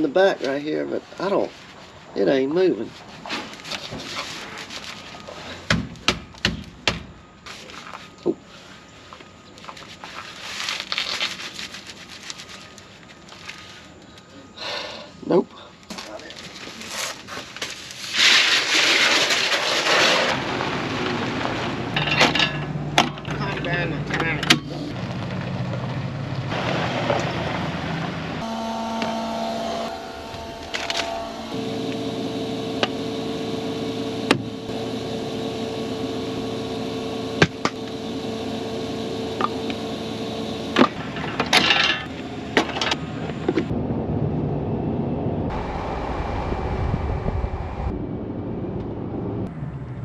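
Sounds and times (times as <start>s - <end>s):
cardboard rustling and crinkling: 2.8s - 5.6s, 7.5s - 14.0s
vehicle engine running: 21.5s - 50.0s
steady whining tones: 28.3s - 49.5s.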